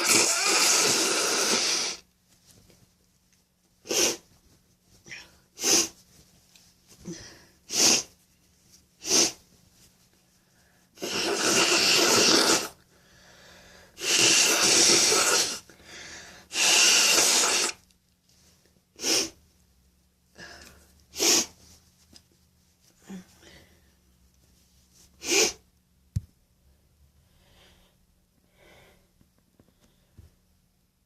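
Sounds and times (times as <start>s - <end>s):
person blowing nose: 0.0s - 2.1s, 3.8s - 4.3s, 5.6s - 6.1s, 7.7s - 8.2s, 9.0s - 9.5s, 11.0s - 12.8s, 14.0s - 15.7s, 16.5s - 17.8s, 19.0s - 19.4s, 21.1s - 21.6s, 25.2s - 25.7s
person sneezing: 3.8s - 4.3s, 5.6s - 6.0s, 7.1s - 8.2s, 9.0s - 9.4s, 14.0s - 15.7s, 19.0s - 19.4s, 21.1s - 21.6s, 25.2s - 25.6s.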